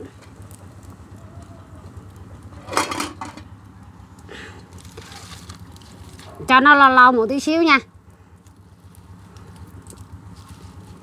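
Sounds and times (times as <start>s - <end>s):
metal cookware clattering: 2.6s - 3.5s.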